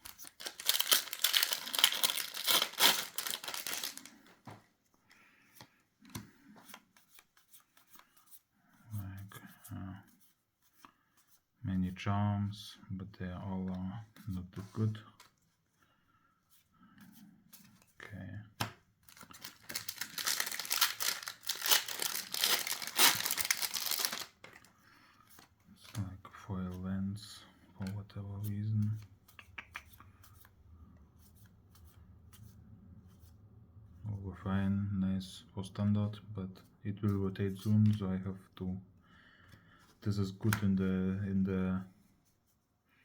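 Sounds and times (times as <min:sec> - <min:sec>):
foil wrapper tearing and crinkling: 0:00.0 - 0:04.1, 0:19.1 - 0:24.4
rustles and clicks of handling: 0:16.5 - 0:30.6.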